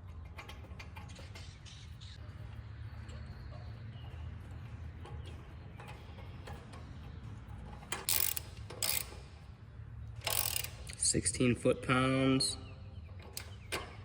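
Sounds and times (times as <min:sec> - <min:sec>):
ratchet wrench clicking: 0:07.7 - 0:09.4, 0:10.2 - 0:11.0.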